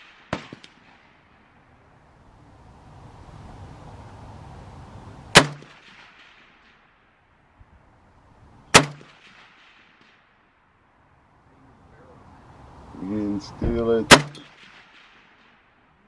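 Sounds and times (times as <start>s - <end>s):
rifle shots with echo: 0.0s - 1.7s, 5.3s - 7.0s, 8.7s - 10.4s, 14.0s - 15.9s.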